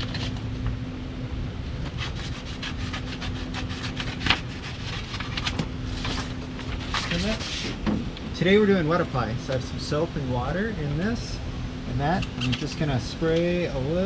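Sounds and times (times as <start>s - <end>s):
steady low hum: 0.0s - 14.0s
paper liner peeling and crinkling: 2.0s - 7.8s.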